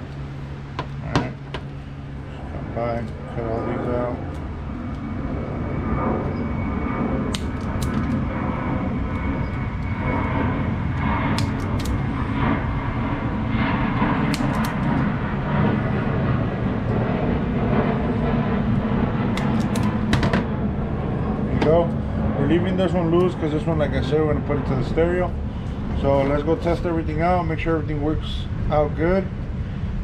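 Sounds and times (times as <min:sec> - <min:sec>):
steady low rumble: 0:00.0 - 0:30.0
side cutters snipping zip ties: 0:11.3 - 0:12.0, 0:14.3 - 0:14.9, 0:19.4 - 0:20.0.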